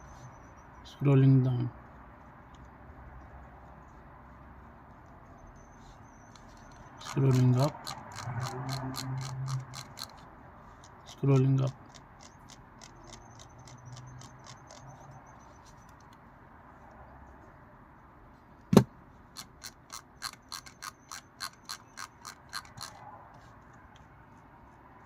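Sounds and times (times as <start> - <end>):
mouse scroll wheel clicking: 6.2 - 16.2, 19.4 - 23.0.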